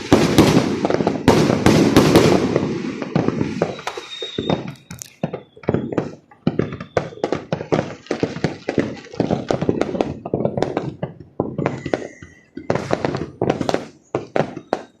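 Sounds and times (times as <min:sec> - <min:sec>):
fireworks bangs and crackles: 0:00.0 - 0:15.0
faint thin whistle: 0:03.6 - 0:07.4, 0:11.6 - 0:13.0, 0:14.1 - 0:15.0.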